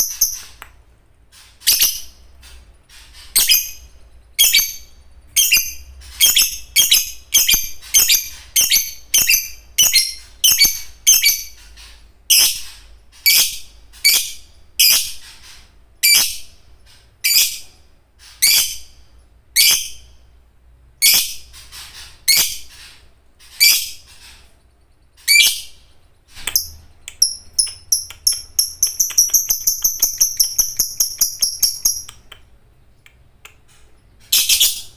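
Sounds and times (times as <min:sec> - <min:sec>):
lovebird shrill squeaky calls: 0:00.0 - 0:00.6, 0:01.6 - 0:02.2, 0:02.9 - 0:11.7, 0:25.2 - 0:25.8, 0:26.5 - 0:32.1
lovebird fast chatter: 0:27.6 - 0:32.1.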